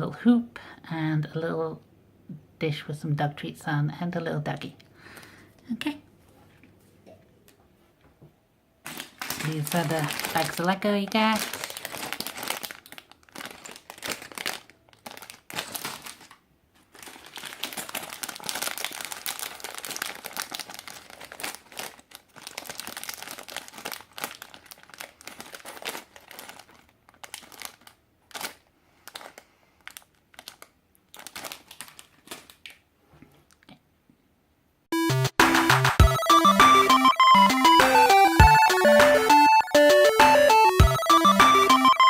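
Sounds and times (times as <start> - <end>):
plastic bags crinkling: 8.8 - 33.6.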